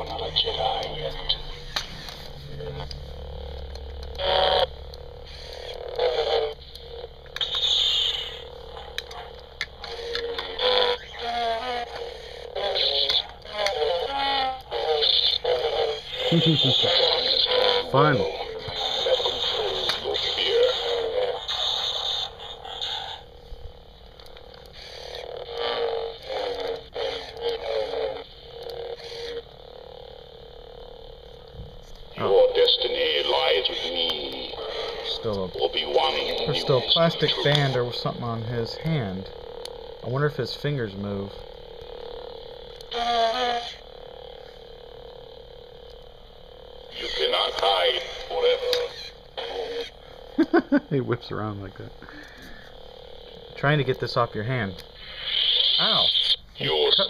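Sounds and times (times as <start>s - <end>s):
low hum: 0.0s - 57.0s
toy motor whirring and creaking: 3.6s - 23.3s, 24.1s - 30.1s, 31.2s - 44.5s, 52.0s - 57.0s.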